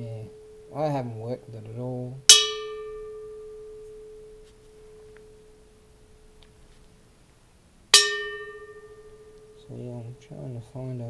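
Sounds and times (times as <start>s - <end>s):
bell struck: 0.0s - 1.4s, 2.3s - 5.6s, 8.0s - 10.7s
bell ringing: 8.0s - 10.3s.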